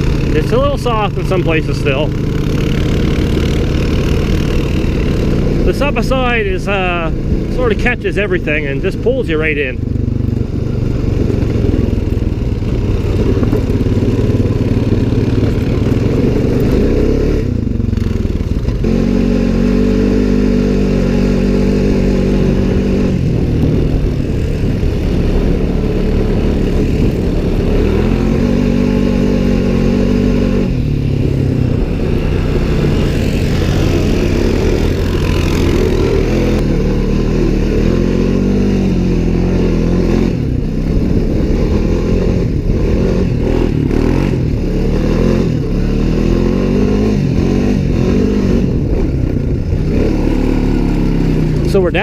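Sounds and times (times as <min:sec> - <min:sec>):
vehicle engine revving: 0:00.0 - 0:52.0.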